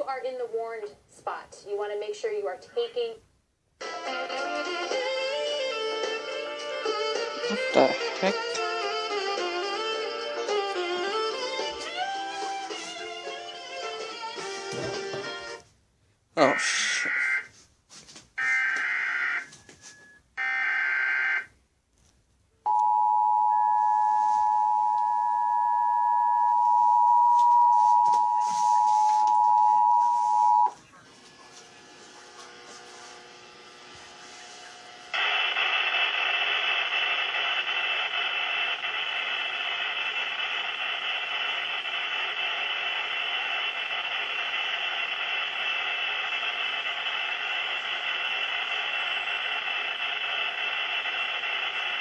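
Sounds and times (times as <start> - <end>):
radio static hiss: 14.3 - 15.5, 16.4 - 17.6, 27.7 - 52.0
two-tone attention signal: 22.7 - 30.8
buzzy data bursts: 31.8 - 52.0.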